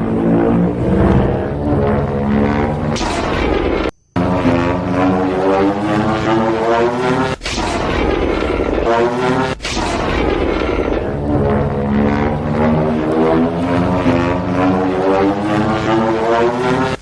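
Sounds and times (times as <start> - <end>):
monster roaring: 0.0 - 3.6, 10.0 - 16.6
deep rumble: 0.0 - 16.4.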